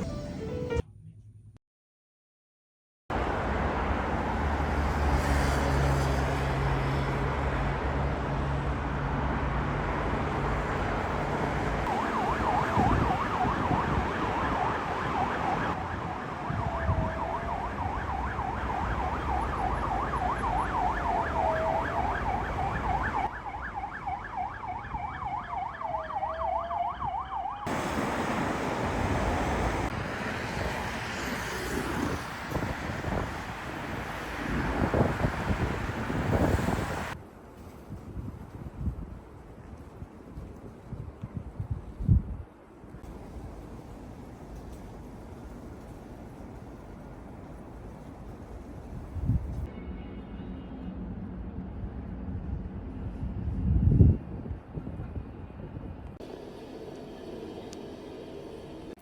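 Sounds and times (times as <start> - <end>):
street traffic: 3.1 - 59.0
emergency siren warbling: 11.8 - 29.9.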